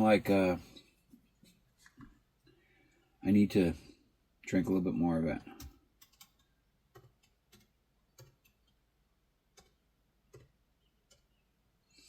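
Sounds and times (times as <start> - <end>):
laptop keyboard clicks: 5.6 - 8.8.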